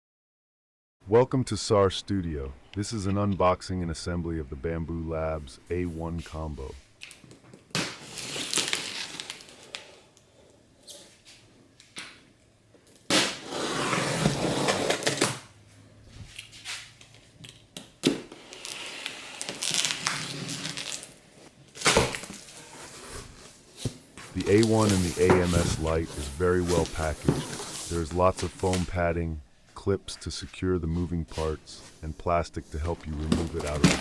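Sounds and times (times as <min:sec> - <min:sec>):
packaging rustling: 0:08.0 - 0:10.0, 0:18.4 - 0:28.9, 0:32.8 - 0:34.0.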